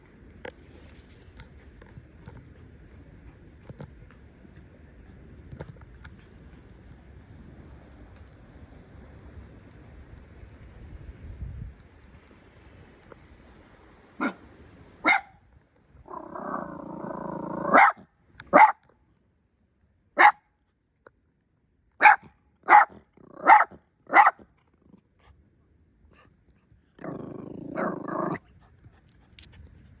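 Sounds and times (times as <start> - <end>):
dog barking: 15.0 - 15.4, 17.6 - 18.8, 20.2 - 20.4, 22.0 - 24.4
dog growling: 16.1 - 17.9, 27.0 - 28.5.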